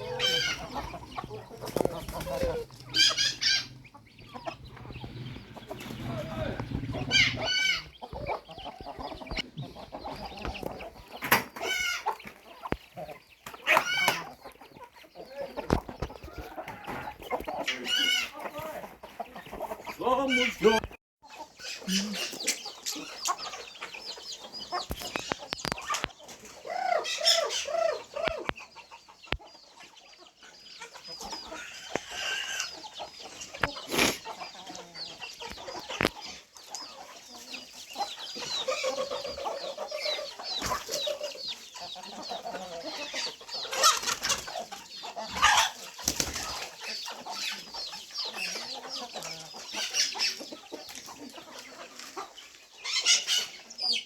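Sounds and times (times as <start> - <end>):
chickens clucking: 0.0 - 54.0
wings flapping: 1.5 - 3.4, 46.0 - 46.7.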